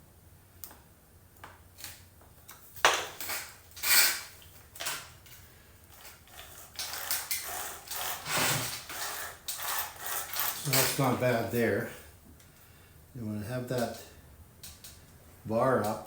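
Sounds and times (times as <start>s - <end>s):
small metal clinks and scrapes: 3.2s - 11.3s.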